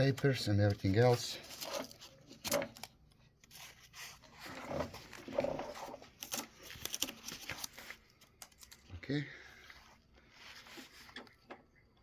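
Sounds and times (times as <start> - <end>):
packing paper rustling and tearing: 0.0 - 8.9.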